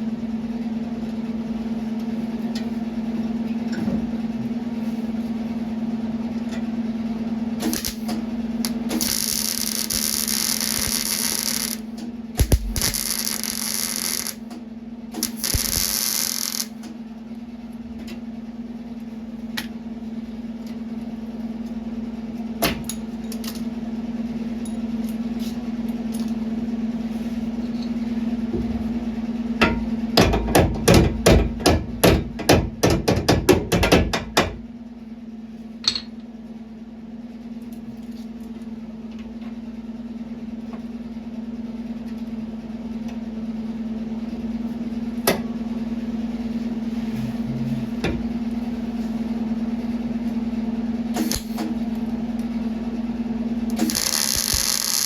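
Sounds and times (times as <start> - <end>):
low hum: 7.6 - 14.5, 15.1 - 16.8, 45.7 - 50.1.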